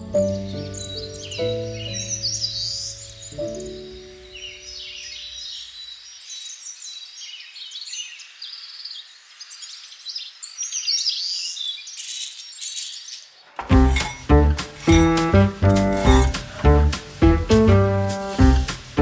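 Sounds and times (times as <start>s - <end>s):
wild birds chirping and singing: 0.0s - 13.6s.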